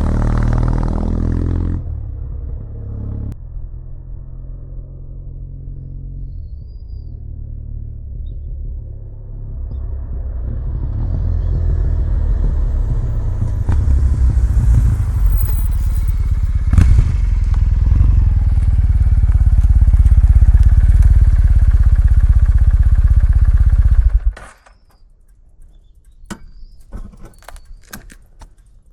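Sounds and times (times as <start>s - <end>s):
motorcycle engine running: 0.0s - 6.5s, 7.2s - 24.5s.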